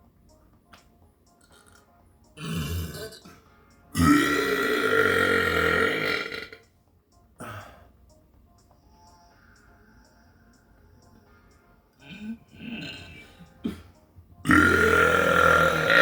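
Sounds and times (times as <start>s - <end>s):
person burping: 2.4s - 6.6s, 7.4s - 7.8s, 12.0s - 16.0s.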